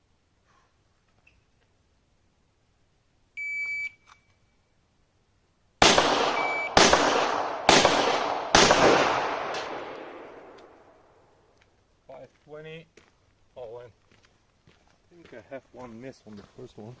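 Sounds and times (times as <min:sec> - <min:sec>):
shot timer beep: 0:03.4 - 0:04.0, 0:06.4 - 0:06.8
pistol shots with echo: 0:05.8 - 0:11.0.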